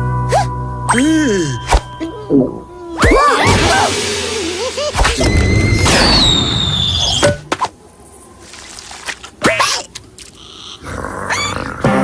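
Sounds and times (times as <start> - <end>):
cartoon crash: 3.0 - 7.4
cartoon falling whistle: 4.7 - 7.4.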